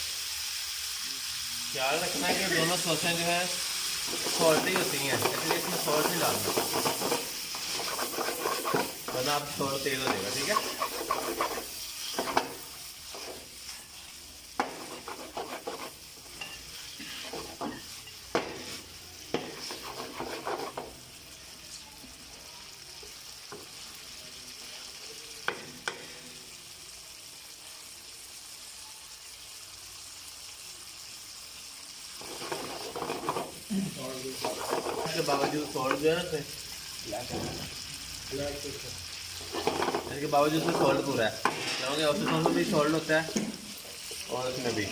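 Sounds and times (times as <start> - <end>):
chicken sizzling in a pan: 0.0 - 44.9
spoon scraping and knocking pan: 4.0 - 13.8, 14.6 - 21.0, 32.2 - 33.7, 34.3 - 36.0, 39.4 - 44.7.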